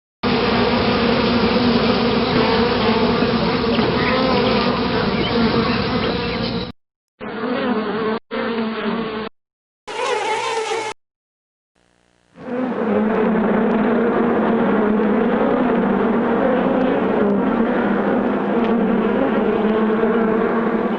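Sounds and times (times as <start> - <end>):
bees buzzing: 0.2 - 9.3, 9.9 - 11.0, 11.8 - 20.9.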